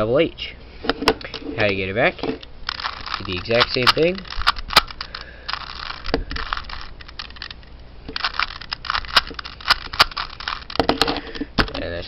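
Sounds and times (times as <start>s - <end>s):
plastic puzzle cube twisting: 2.4s - 11.8s.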